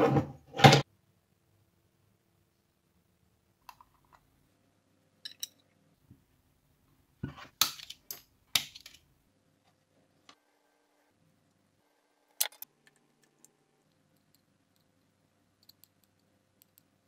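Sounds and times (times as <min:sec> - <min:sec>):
clicks and taps of small objects: 0:07.6 - 0:09.0, 0:12.4 - 0:17.0.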